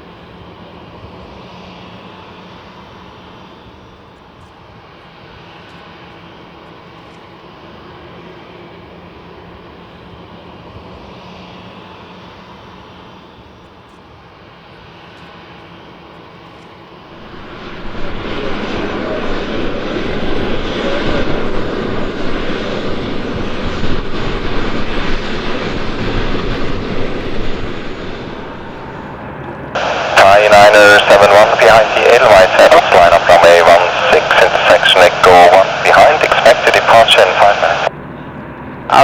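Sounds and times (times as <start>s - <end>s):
jet engines roaring: 17.1s - 37.9s.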